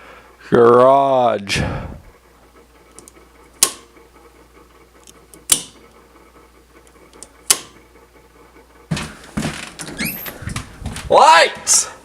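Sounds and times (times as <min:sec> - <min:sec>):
sharp clicks: 0:03.0 - 0:03.9, 0:05.0 - 0:05.8, 0:07.1 - 0:07.8.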